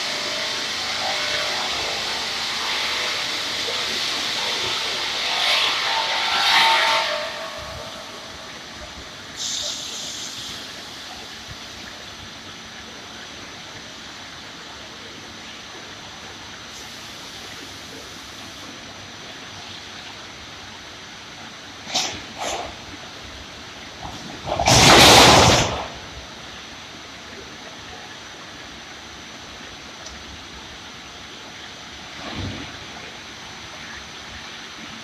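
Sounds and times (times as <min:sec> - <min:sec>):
saw machine running: 0:00.0 - 0:09.4
short hiss: 0:09.3 - 0:10.9.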